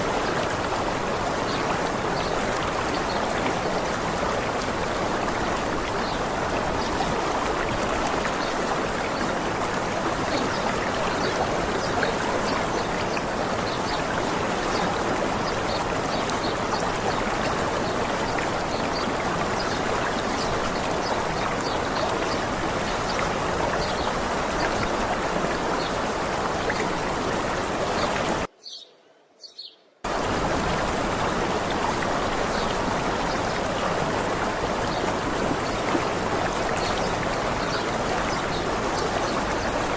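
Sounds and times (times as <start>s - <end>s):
rushing water: 0.0s - 28.5s, 30.0s - 39.9s
faint bird chirps: 28.6s - 30.0s.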